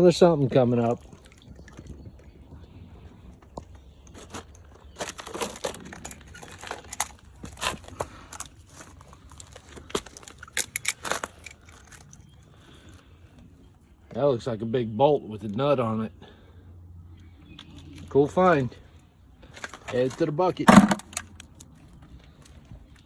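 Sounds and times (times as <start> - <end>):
magnet crackling and scraping: 4.1 - 12.7.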